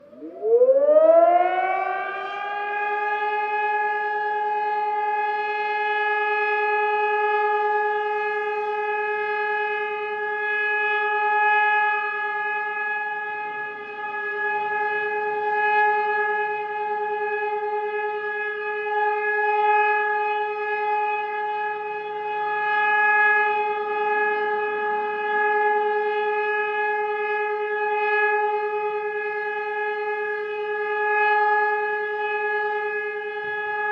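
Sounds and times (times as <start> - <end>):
emergency siren wailing: 0.0 - 33.9.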